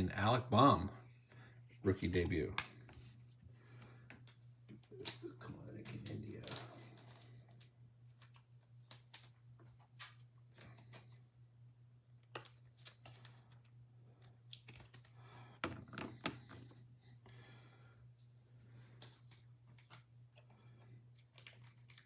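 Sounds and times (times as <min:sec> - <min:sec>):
steady low hum: 0:00.0 - 0:22.0
trading cards rustling: 0:04.2 - 0:11.2, 0:12.3 - 0:15.2.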